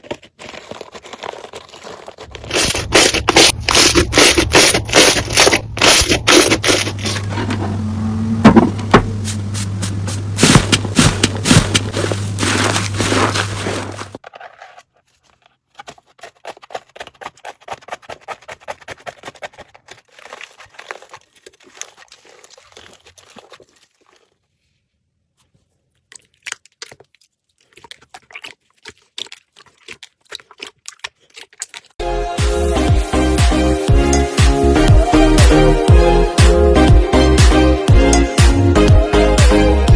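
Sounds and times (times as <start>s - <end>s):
slime squishing and crackling: 0.0s - 7.3s, 9.6s - 14.2s, 15.8s - 24.4s, 26.0s - 32.0s.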